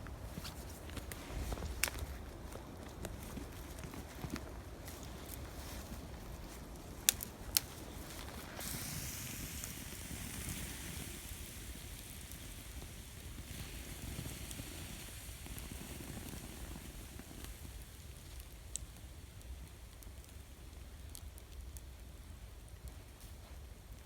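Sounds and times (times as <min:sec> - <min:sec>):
campfire burning: 0:00.0 - 0:24.0
fire popping: 0:00.0 - 0:24.0
fire hissing: 0:04.8 - 0:24.0.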